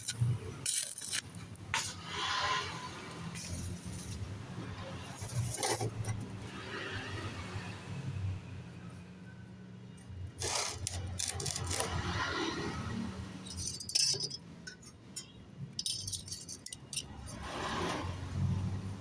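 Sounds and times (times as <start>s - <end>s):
light metallic clinks and rattles: 0.0s - 1.9s, 5.0s - 6.3s, 10.0s - 12.3s, 13.4s - 17.8s.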